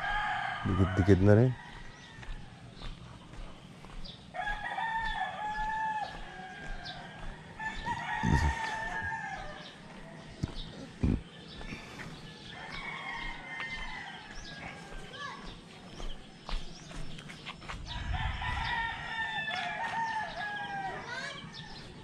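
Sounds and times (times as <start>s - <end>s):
rooster crowing: 0.0s - 2.5s, 4.4s - 10.5s, 12.4s - 15.0s, 17.9s - 21.6s.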